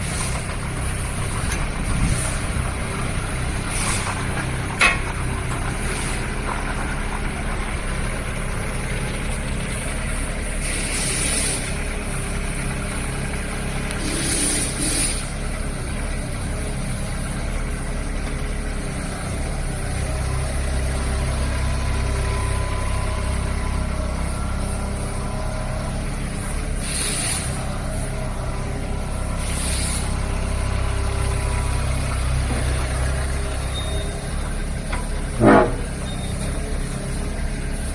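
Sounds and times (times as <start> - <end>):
excavator engine running: 0.0 - 37.9
short hissing bursts: 10.6 - 11.7, 14.0 - 15.3, 26.8 - 27.5, 29.4 - 30.2.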